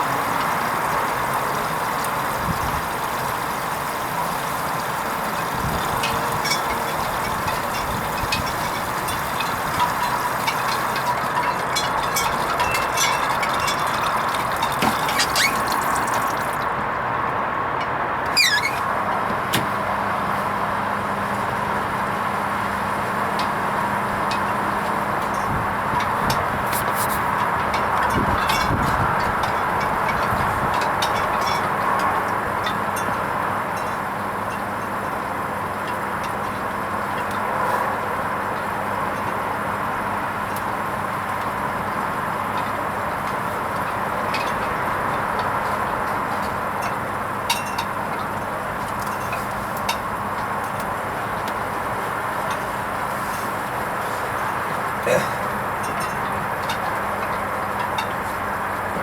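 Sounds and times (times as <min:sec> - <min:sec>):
water rushing in washing machine: 0:00.0 - 0:17.0.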